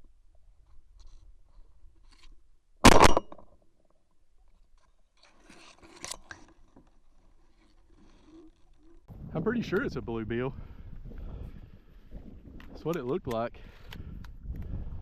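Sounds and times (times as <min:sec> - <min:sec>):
clicking and scraping of handling: 0:00.6 - 0:02.6, 0:03.3 - 0:09.1, 0:12.5 - 0:15.0
shotgun shot: 0:02.8 - 0:03.4.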